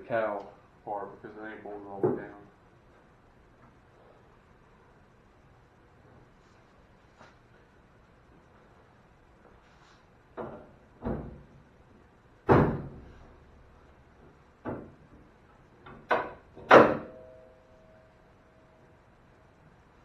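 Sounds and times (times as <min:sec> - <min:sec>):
car hood slamming shut: 0:12.5 - 0:13.0
metallic ring: 0:16.2 - 0:18.9.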